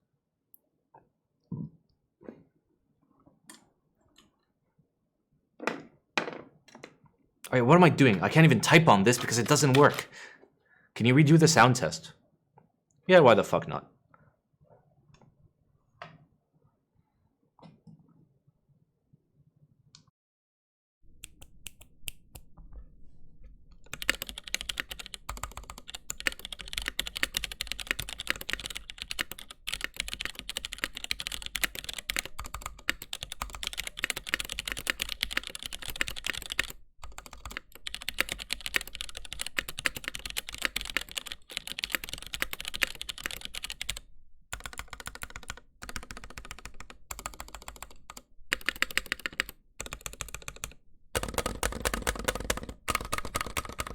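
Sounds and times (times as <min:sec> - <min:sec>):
mechanical keyboard typing: 0:08.0 - 0:10.1, 0:23.9 - 0:44.0, 0:44.6 - 0:53.9.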